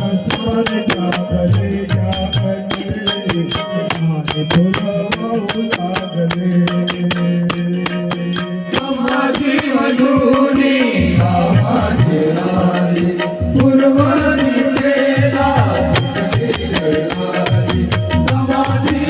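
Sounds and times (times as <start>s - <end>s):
devotional instrumental melody: 0.0s - 19.0s
percussion and rattling jingles: 0.0s - 19.0s.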